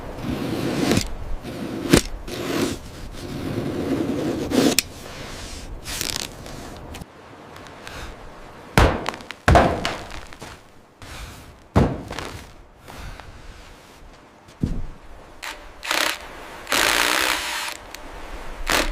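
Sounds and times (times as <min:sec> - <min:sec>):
sharp knocks: 0:08.8 - 0:10.2, 0:11.7 - 0:12.3
rasping scraping: 0:15.4 - 0:18.9.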